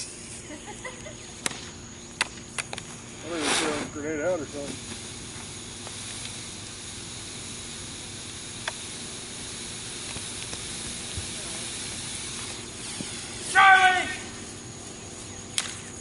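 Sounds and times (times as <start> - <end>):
smoke bomb firework hissing: 0.0 - 16.0
faint ticks: 8.6 - 8.8.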